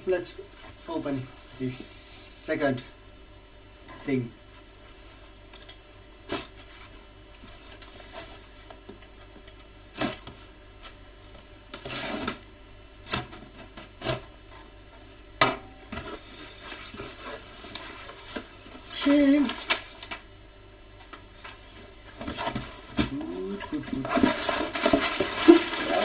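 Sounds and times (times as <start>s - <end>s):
cardboard package knocks and scrapes: 22.1s - 23.2s, 23.8s - 26.0s
cardboard tearing: 22.2s - 26.0s.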